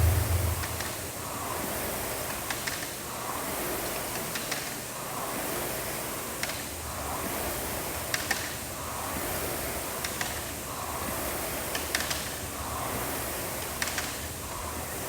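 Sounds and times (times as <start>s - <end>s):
rowing machine fan whooshing: 0.0s - 1.8s.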